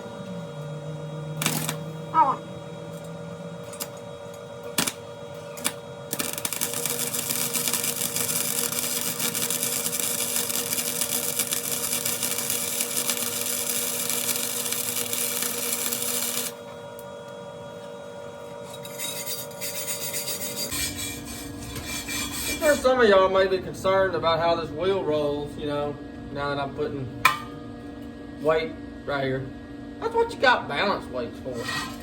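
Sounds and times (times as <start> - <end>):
welding arc crackling: 1.4 - 1.9, 4.7 - 16.6.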